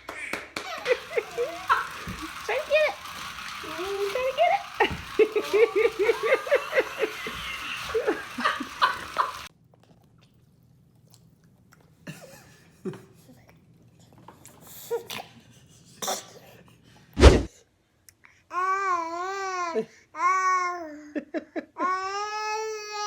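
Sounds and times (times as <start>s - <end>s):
laughter: 0.6s - 2.3s, 4.8s - 9.5s, 12.1s - 13.2s, 21.1s - 21.9s
baby whining: 21.8s - 23.0s.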